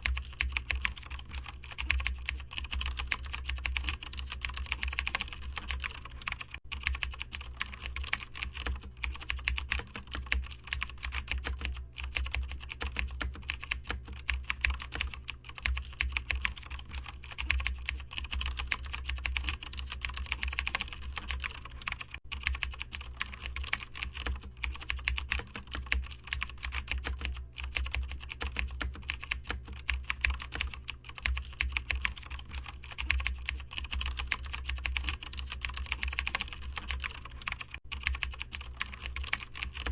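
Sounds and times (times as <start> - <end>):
steady low hum: 0.0 - 39.9
typing on computer keyboard: 0.0 - 39.9.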